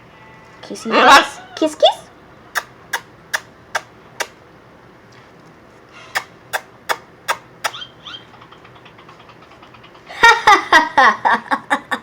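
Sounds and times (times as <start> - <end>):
kissing smacks: 2.5 - 4.4, 6.1 - 7.9.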